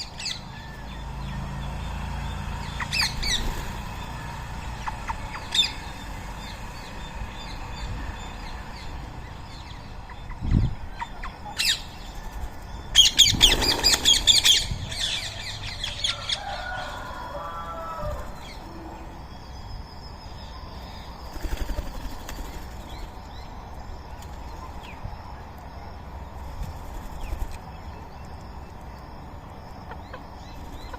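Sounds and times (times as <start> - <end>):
parakeets calling: 0.0 - 23.5
birds chirping: 0.0 - 30.9
wings flapping: 13.1 - 14.4, 21.3 - 22.9.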